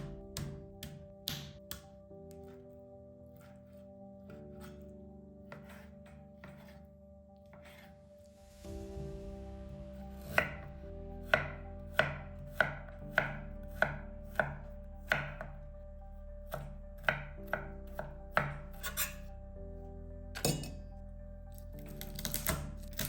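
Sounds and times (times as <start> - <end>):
knife chopping on cutting board: 5.5 - 6.8, 7.5 - 7.9, 10.2 - 15.5, 16.5 - 19.2, 22.0 - 23.0.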